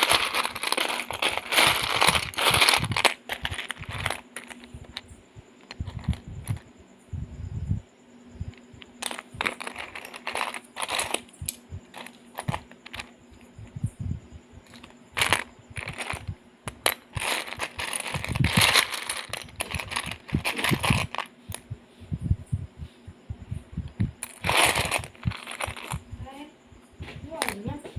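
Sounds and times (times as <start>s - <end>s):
packaging rustling: 0.0s - 5.0s, 8.9s - 11.3s, 11.9s - 13.1s, 14.7s - 21.3s, 24.2s - 26.0s
plastic pieces clicking and rattling: 0.0s - 6.6s, 8.8s - 13.1s, 14.7s - 21.3s, 24.2s - 26.0s.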